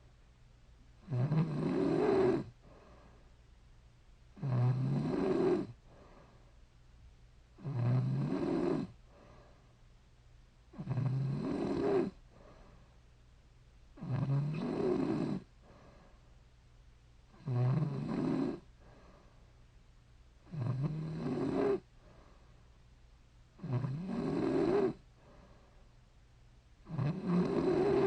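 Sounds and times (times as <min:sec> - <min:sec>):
woman snoring: 0:01.0 - 0:02.5, 0:04.4 - 0:05.8, 0:07.6 - 0:09.0, 0:10.8 - 0:12.2, 0:14.0 - 0:15.5, 0:17.4 - 0:18.7, 0:20.5 - 0:21.8, 0:23.6 - 0:25.0, 0:26.9 - 0:28.0.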